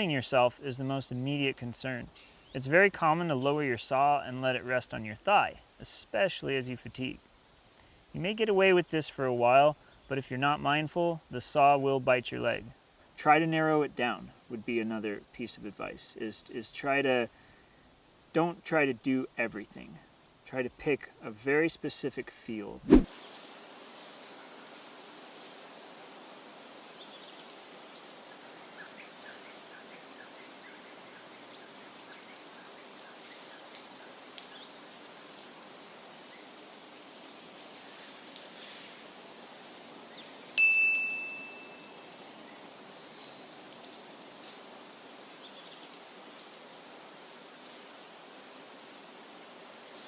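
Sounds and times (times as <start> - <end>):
sharp high ding: 40.6 - 41.9.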